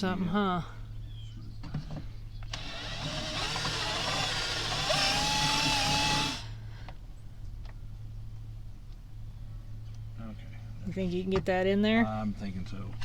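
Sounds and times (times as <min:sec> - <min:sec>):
power drill whining: 0:02.5 - 0:06.5.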